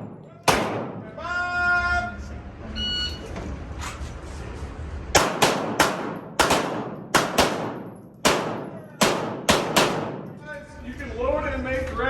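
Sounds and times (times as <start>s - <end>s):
pistol shots echoing: 0.0s - 1.2s, 5.2s - 10.4s.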